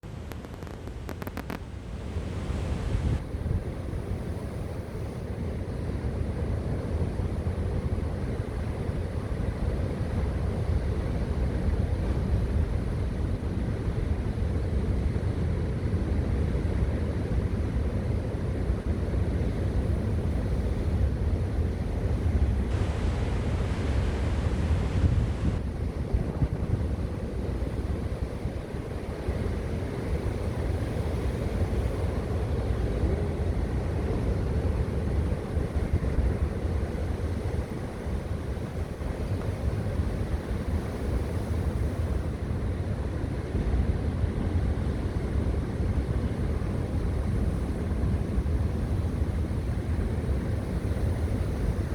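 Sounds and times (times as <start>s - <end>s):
sea waves breaking on shore: 0.1s - 51.9s
wind buffeting microphone: 20.3s - 42.2s.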